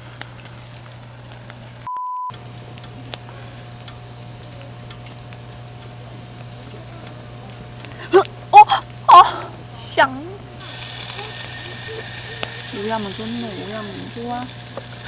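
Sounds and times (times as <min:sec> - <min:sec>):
low steady hum: 0:00.0 - 0:15.0
faint clicks: 0:00.2 - 0:07.2, 0:10.6 - 0:15.0
censor bleep: 0:01.9 - 0:02.3.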